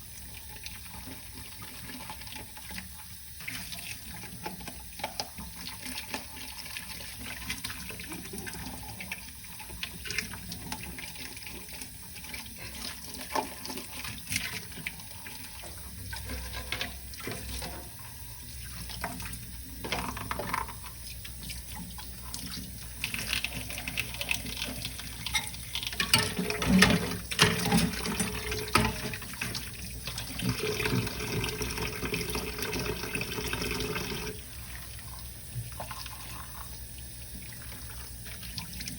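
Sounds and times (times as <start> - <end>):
water running from sink tap: 0.0 - 38.9
dishes knocking and clinking: 25.3 - 29.2.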